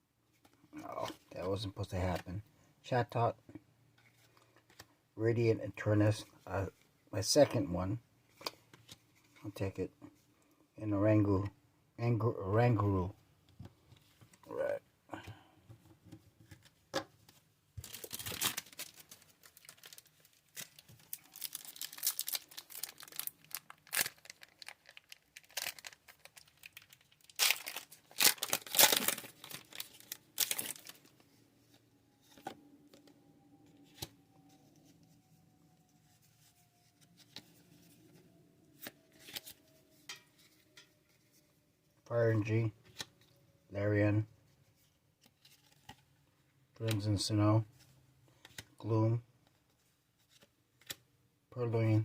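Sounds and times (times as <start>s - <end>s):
foil wrapper tearing and crinkling: 17.8s - 31.0s.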